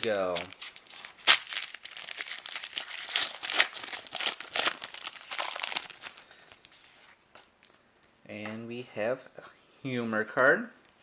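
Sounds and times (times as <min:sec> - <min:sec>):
wrapper tearing and crinkling: 0:00.0 - 0:06.2.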